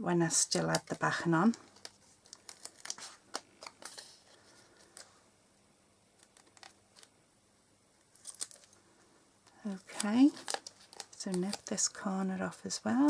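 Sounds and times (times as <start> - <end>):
card and paper rustling: 0.5 - 5.2, 8.1 - 8.9, 9.5 - 13.0.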